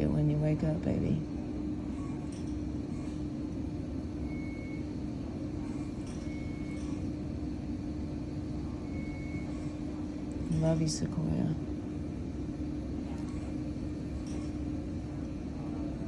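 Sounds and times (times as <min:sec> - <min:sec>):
hospital equipment hum: 0:00.0 - 0:16.0.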